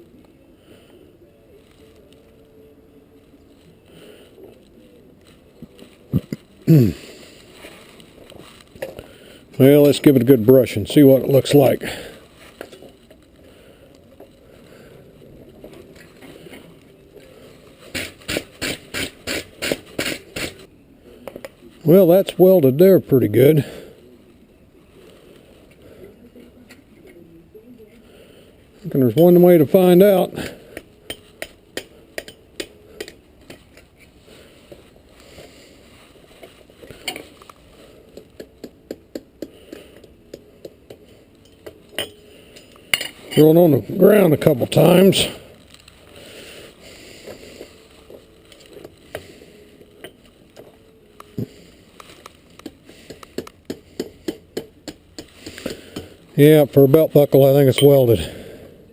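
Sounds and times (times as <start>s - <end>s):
hammer tapping on steel anvil: 31.1s - 33.6s, 41.6s - 42.2s.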